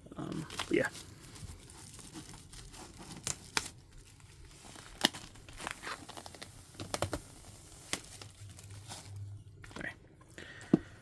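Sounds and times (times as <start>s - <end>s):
plastic shrink wrap tearing: 0.3s - 9.3s.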